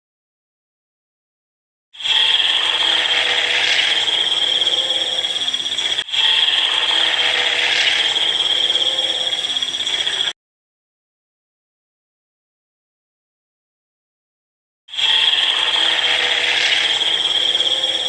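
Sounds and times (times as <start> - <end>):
dinosaur call with high-pitched tone: 15.0 - 18.0.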